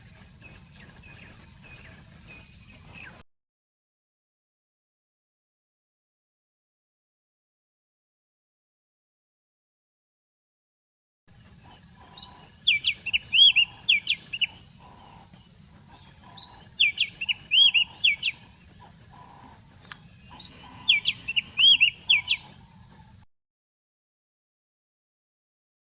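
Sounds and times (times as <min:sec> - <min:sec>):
songbird whistling: 0:11.5 - 0:23.2.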